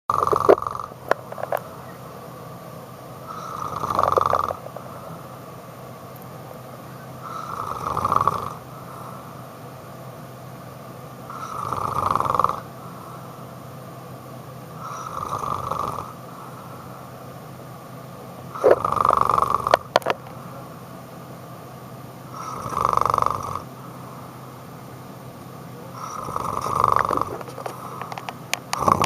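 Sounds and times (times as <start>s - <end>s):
person snoring: 0.1s - 1.7s, 3.2s - 5.3s, 7.2s - 9.2s, 11.3s - 13.3s, 14.8s - 16.6s, 18.6s - 19.9s, 22.3s - 23.7s, 25.9s - 29.0s.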